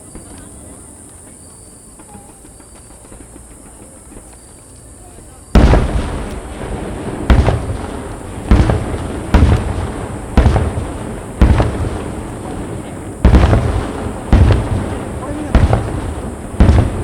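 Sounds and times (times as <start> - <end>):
firework shells booming: 5.6 - 17.0.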